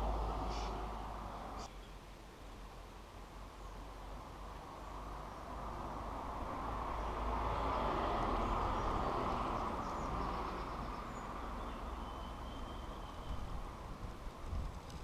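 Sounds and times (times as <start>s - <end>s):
faint bird chirps: 9.9s - 13.6s.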